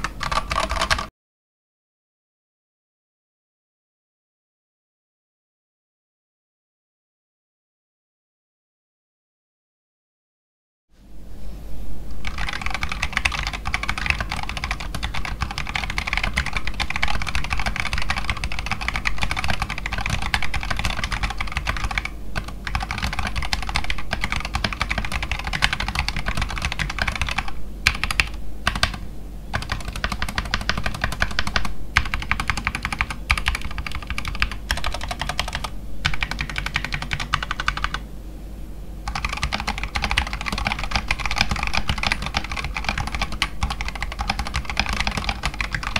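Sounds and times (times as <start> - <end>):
mechanical keyboard typing: 0.0 - 1.1, 12.2 - 38.0, 39.1 - 45.9.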